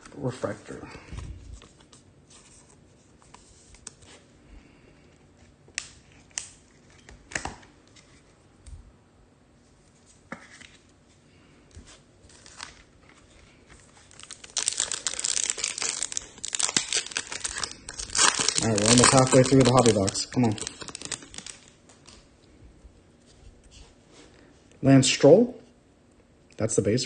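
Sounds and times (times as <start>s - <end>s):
wrapper crinkling and tearing: 12.3s - 13.0s, 13.7s - 22.2s.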